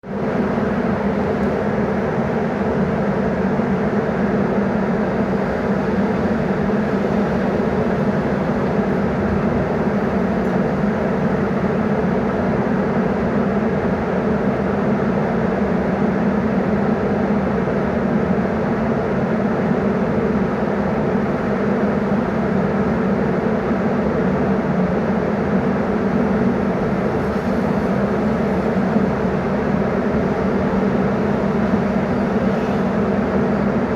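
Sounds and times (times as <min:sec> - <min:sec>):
low mechanical hum: 0:00.0 - 0:33.9
ventilation air rushing: 0:23.8 - 0:33.9.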